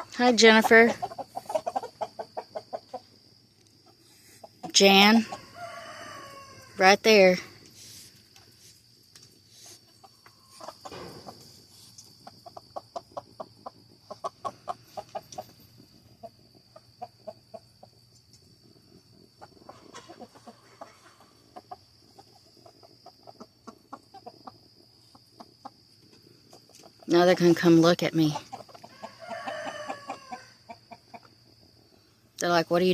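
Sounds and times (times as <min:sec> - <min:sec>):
chickens clucking: 0:00.0 - 0:06.7, 0:07.6 - 0:27.2, 0:28.2 - 0:31.9.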